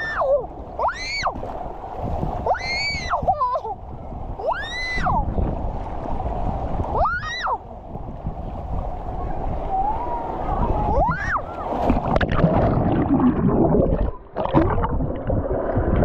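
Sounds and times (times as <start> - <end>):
water splashing: 0.0 - 16.0
children shrieking: 2.4 - 3.6, 4.4 - 5.2, 7.0 - 7.6, 9.7 - 11.8.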